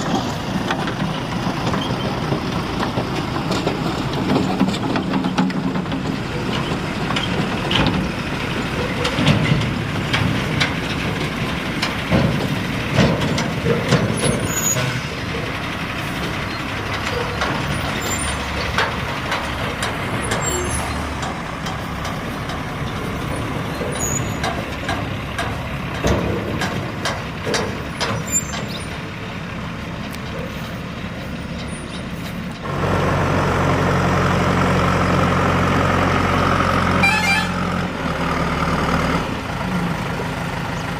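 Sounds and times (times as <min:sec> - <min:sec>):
knocks and clanks: 0:00.0 - 0:29.3
diesel machinery engine: 0:00.0 - 0:40.9.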